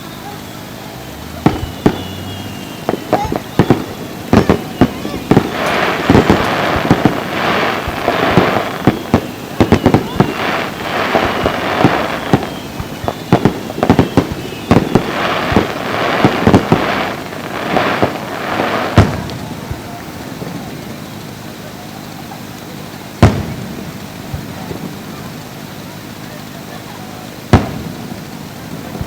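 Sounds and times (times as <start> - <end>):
fireworks bangs: 0.0 - 29.0
fireworks crackling: 0.0 - 29.0.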